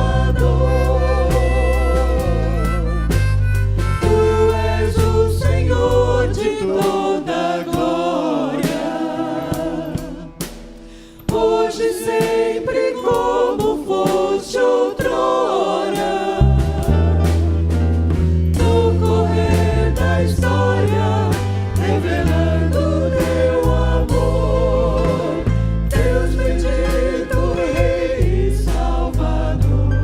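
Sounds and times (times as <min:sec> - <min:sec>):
deep bass: 0:00.0 - 0:06.5, 0:16.4 - 0:30.0
voices singing with vibrato: 0:00.0 - 0:17.7, 0:18.6 - 0:30.0
band with drums: 0:00.0 - 0:30.0.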